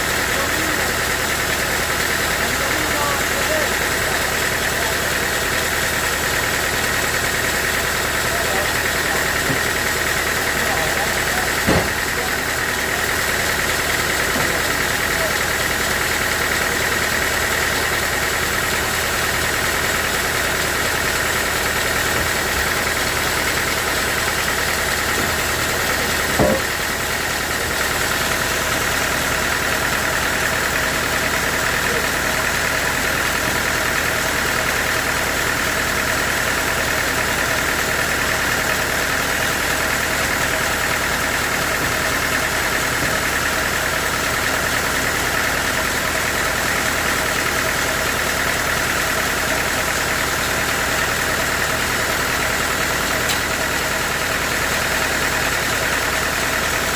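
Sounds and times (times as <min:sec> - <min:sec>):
sawmill machinery droning: 0:00.0 - 0:56.9
short knock: 0:11.6 - 0:12.0, 0:26.4 - 0:26.7.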